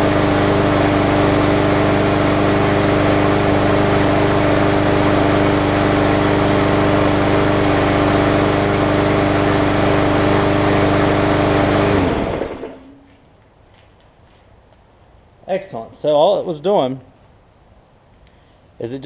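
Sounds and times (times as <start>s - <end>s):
lawn mower engine running: 0.0s - 13.1s.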